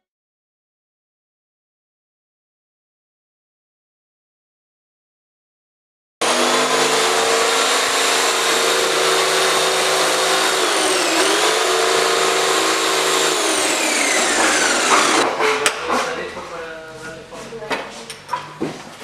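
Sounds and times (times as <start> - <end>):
electric power tool running: 6.2 - 15.2.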